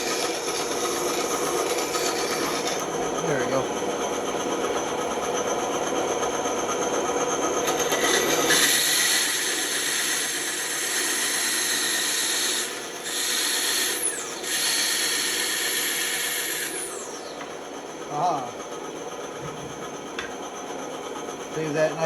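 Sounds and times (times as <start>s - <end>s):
bandsaw cutting wood: 0.0s - 3.6s, 7.6s - 17.5s.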